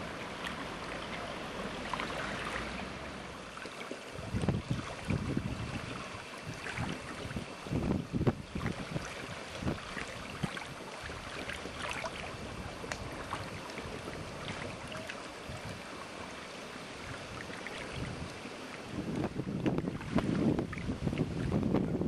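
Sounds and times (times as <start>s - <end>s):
water lapping and splashing: 0.0s - 22.0s
wind buffeting microphone: 4.2s - 16.1s, 17.0s - 22.0s.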